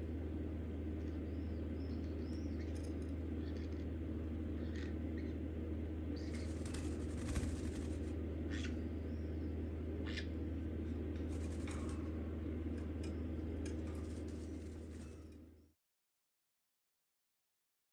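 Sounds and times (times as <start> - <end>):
low steady hum: 0.0 - 15.8.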